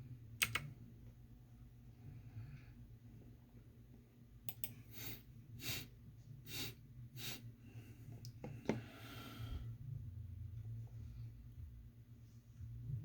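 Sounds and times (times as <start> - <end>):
computer keyboard clicks: 0.4 - 0.7, 4.5 - 4.8.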